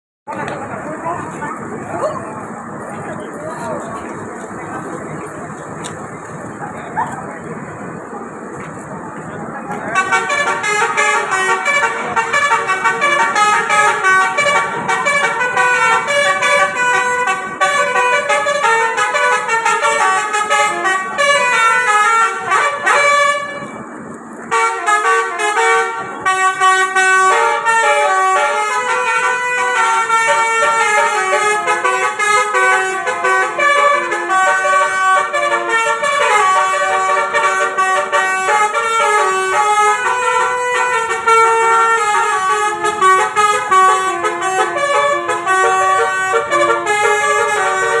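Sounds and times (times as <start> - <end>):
air horns playing melody: 9.9 - 23.8, 24.5 - 48.0.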